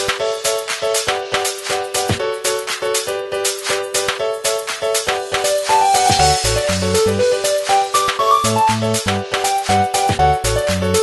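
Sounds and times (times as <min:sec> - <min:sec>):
steady beat: 0:04.8 - 0:10.4
quick repeating melody: 0:05.6 - 0:09.9.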